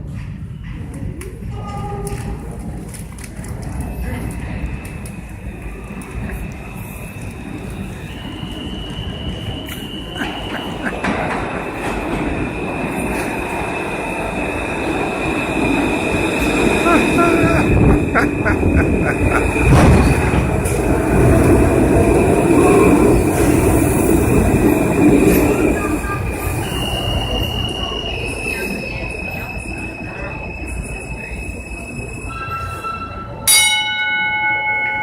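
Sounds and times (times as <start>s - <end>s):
train wheels rumbling over rails: 0.0s - 32.1s
high brake squeal: 6.6s - 10.9s, 25.2s - 33.5s.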